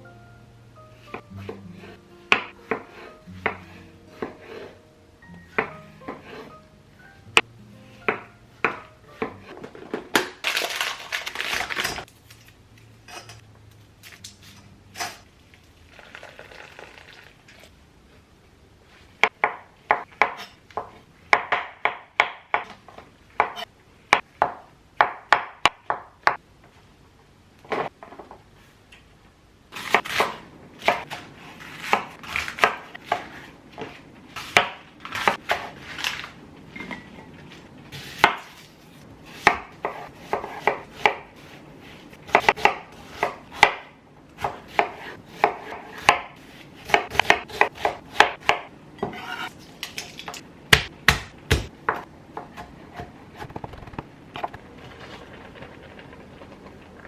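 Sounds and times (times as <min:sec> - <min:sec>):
knife chopping on cutting board: 0:02.3 - 0:04.6, 0:39.3 - 0:41.6, 0:42.3 - 0:43.8, 0:44.4 - 0:49.5, 0:50.7 - 0:54.0.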